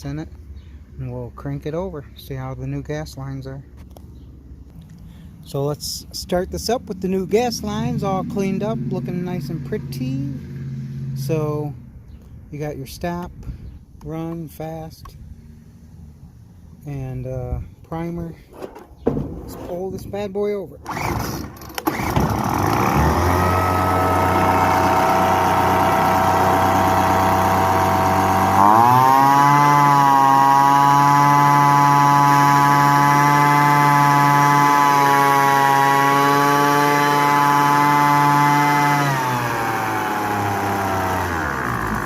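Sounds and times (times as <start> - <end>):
leaf blower engine revving: 20.8 - 42.0.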